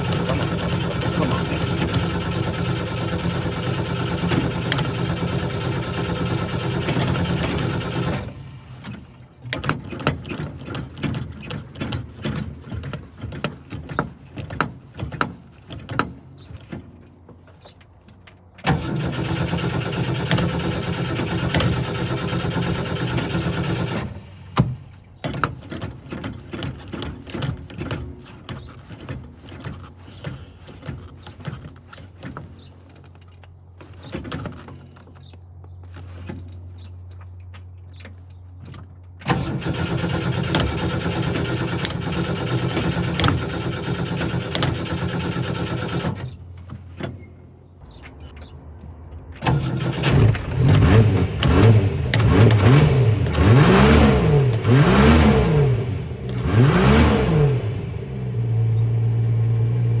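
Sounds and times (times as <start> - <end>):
car engine cranking and revving: 0.0 - 11.0, 18.6 - 26.0, 39.2 - 46.5, 49.3 - 60.0.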